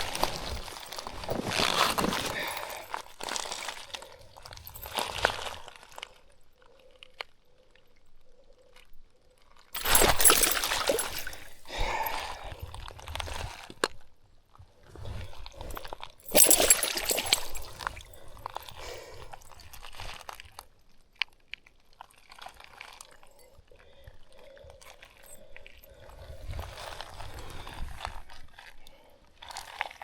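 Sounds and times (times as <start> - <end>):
water splashing and sloshing: 9.8 - 12.5, 15.7 - 18.9.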